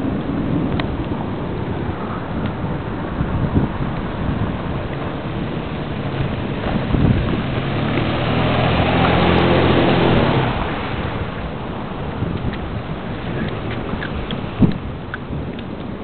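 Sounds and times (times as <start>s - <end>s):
vehicle passing by: 2.8s - 14.6s.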